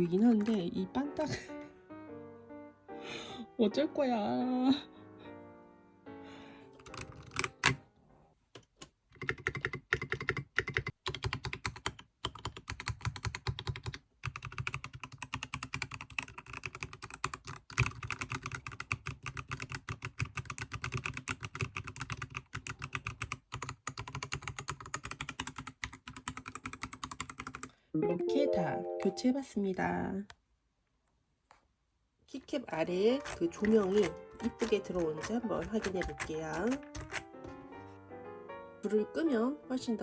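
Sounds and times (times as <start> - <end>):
fast mechanical keyboard typing: 0.0 - 0.7, 6.8 - 7.8, 9.1 - 27.7, 32.8 - 37.5.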